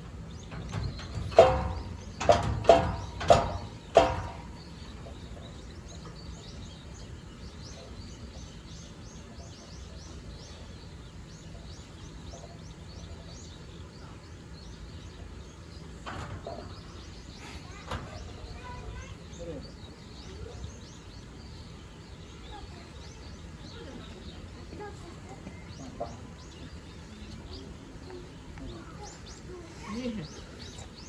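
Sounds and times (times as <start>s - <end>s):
outdoor background: 0.0s - 31.0s
small birds chirping: 0.0s - 31.0s
ringing metallic clangs: 0.1s - 5.2s.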